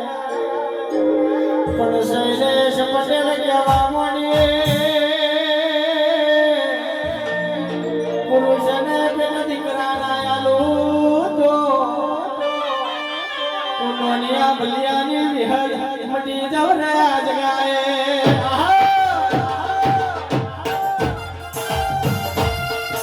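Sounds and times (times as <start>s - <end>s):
instrumental accompaniment: 0.0s - 13.8s, 18.1s - 23.0s
devotional singing: 0.0s - 23.0s
deep drum beats: 3.7s - 5.1s, 18.2s - 23.0s.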